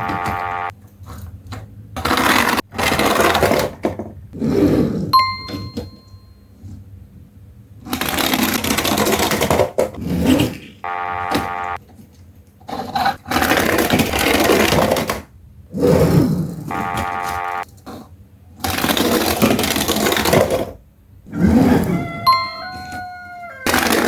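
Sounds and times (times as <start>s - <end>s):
toy cars rattling down slide: 2.0s - 5.1s, 7.8s - 10.8s, 12.6s - 16.6s, 17.8s - 20.8s, 23.6s - 24.0s
bell-like ding: 5.2s - 6.5s, 22.3s - 23.4s.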